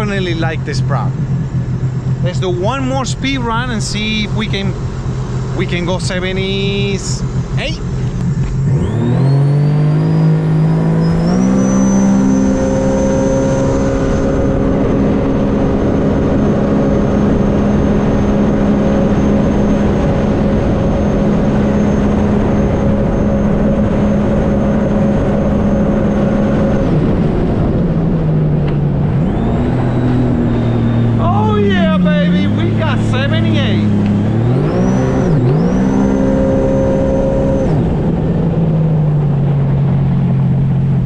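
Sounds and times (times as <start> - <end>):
personal watercraft engine at full throttle: 0.0 - 41.0.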